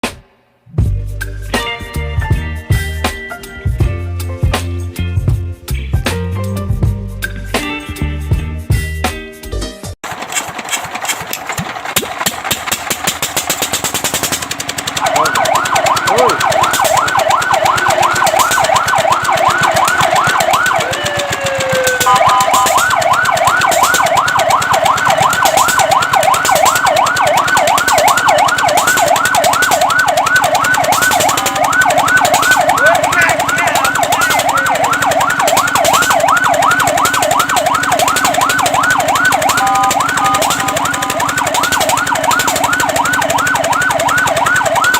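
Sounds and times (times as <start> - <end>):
rapid mechanical pulsing: 10.0 - 44.9
fire truck siren yelping: 13.0 - 44.9.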